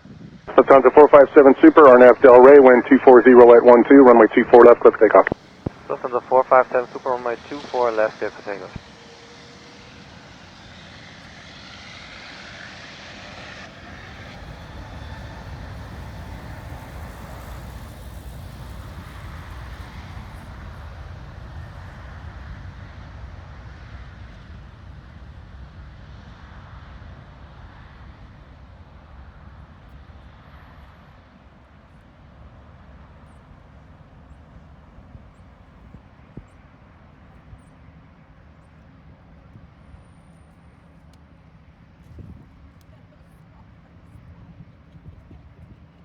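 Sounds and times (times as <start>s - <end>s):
jet airliner taking off: 0.0s - 36.4s.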